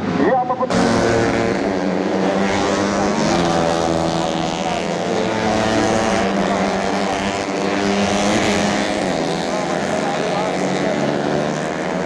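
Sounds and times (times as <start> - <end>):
motorcycle engines running: 0.7 - 12.0.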